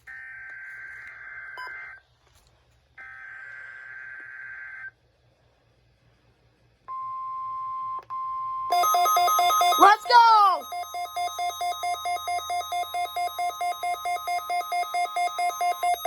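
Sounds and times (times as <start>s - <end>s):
steady warning alarm tone: 8.7s - 16.0s.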